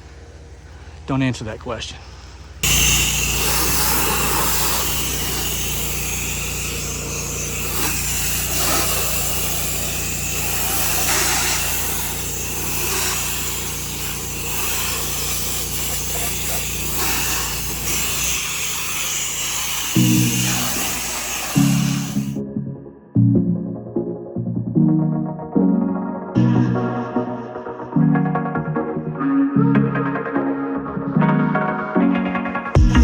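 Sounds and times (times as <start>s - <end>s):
high-pressure water spray hiss: 2.6s - 22.4s
pressure washer engine running: 2.6s - 22.4s.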